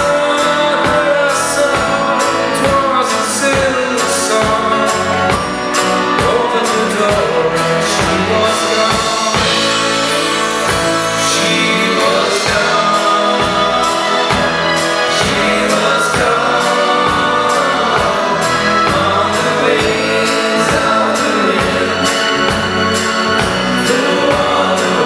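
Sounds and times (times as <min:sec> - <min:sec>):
backing instruments: 0:00.0 - 0:25.0
steady drum beat: 0:00.0 - 0:25.0
voices singing in harmony: 0:00.0 - 0:25.0.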